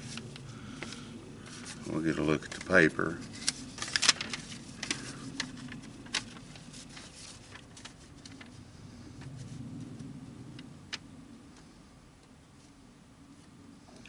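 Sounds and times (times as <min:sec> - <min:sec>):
paper rustling: 0:00.0 - 0:08.6.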